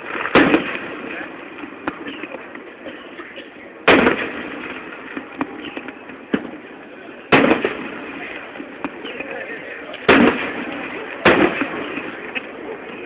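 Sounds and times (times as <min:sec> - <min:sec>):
sharp firework cracks: 0:00.0 - 0:02.4, 0:03.8 - 0:06.6, 0:07.3 - 0:09.2, 0:09.9 - 0:12.6.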